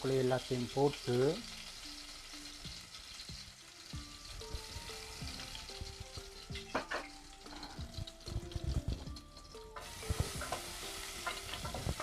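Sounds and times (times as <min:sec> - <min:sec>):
food sizzling in oil: 0:00.0 - 0:12.0
soft simple melody: 0:01.1 - 0:12.0
spoon knocking and scraping pan: 0:04.4 - 0:12.0.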